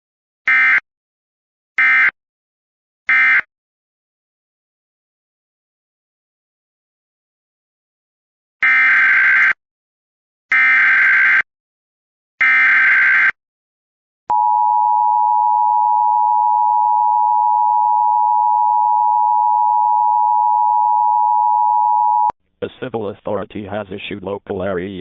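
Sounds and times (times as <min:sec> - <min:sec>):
steady attention tone: 0:14.3 - 0:22.3.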